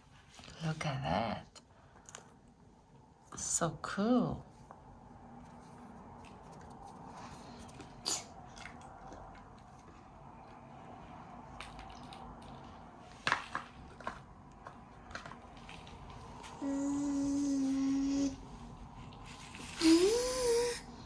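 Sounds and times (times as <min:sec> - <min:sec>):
person humming: 0:16.6 - 0:18.4, 0:19.8 - 0:20.9.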